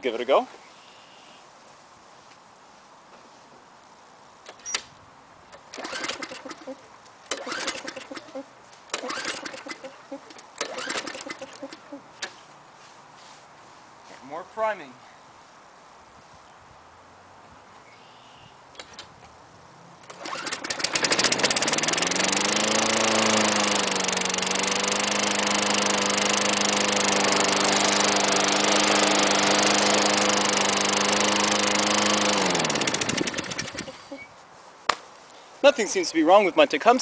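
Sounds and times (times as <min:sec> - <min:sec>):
lawnmower engine starting and running: 0:05.5 - 0:12.4, 0:20.0 - 0:34.3.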